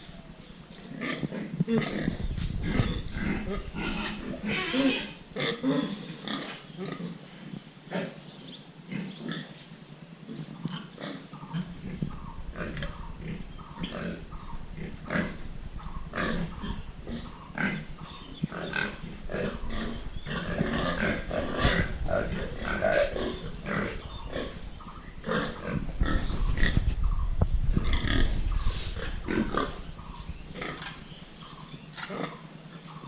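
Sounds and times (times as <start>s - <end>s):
pigs grunting: 0.1s - 8.2s, 10.3s - 33.0s
low steady rumble: 11.6s - 31.9s.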